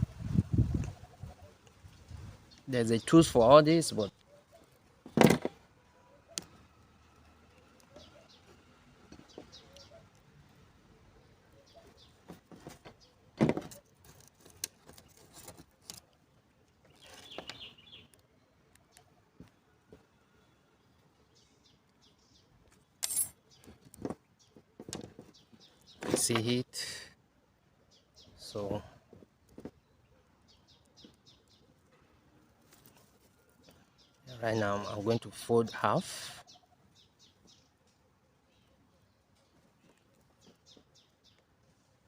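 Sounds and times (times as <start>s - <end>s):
metal parts clinking and rattling: 23.0s - 23.4s.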